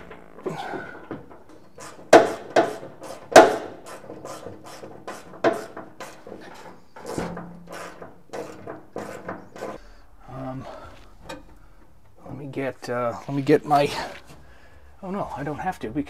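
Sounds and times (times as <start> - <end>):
tools knocking and clattering: 0.0 - 9.8, 11.0 - 12.2.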